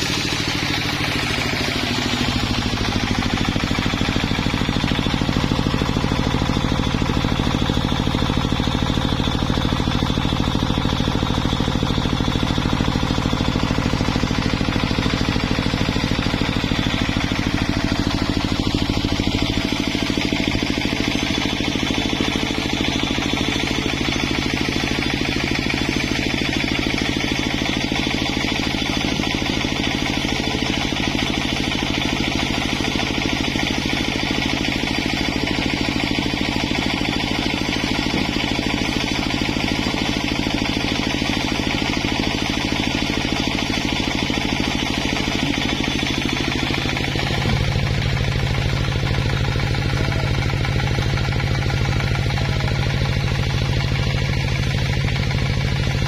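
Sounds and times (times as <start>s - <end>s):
engine running: 0.0s - 56.0s.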